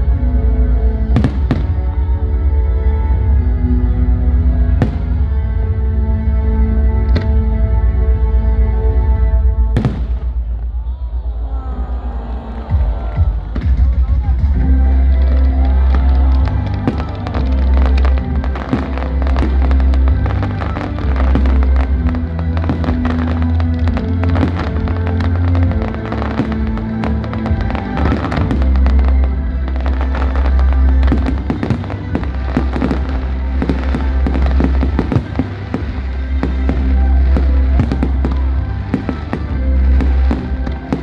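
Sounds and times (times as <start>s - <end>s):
loud music with deep bass: 0.0s - 10.8s, 12.0s - 41.0s
fireworks cracks and bangs: 1.2s - 1.8s, 4.8s - 5.2s, 9.8s - 10.6s, 15.7s - 41.0s.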